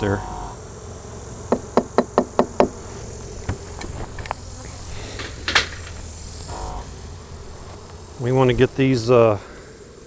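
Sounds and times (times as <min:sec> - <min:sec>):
honey bees buzzing: 0:00.0 - 0:10.0
knocks on wooden hive equipment: 0:01.4 - 0:06.9.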